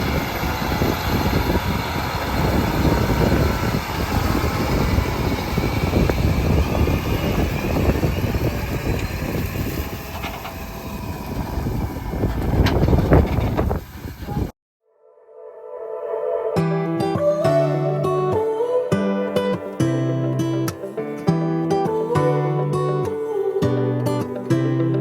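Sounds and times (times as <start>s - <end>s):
harvest machinery engine rumble: 0.0s - 14.5s.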